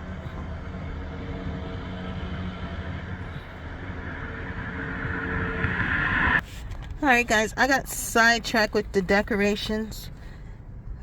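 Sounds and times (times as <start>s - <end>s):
faint engine hum: 0.0s - 7.0s
motor vehicle rumble: 0.0s - 7.0s.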